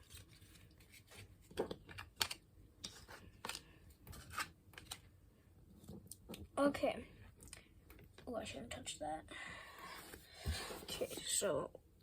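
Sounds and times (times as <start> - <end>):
trading cards flicked and rustled: 0.0 - 5.1.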